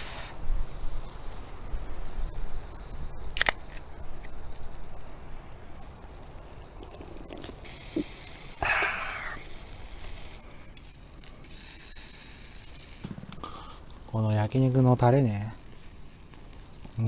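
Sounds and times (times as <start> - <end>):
meat sizzling on a grill: 0.0 - 17.0.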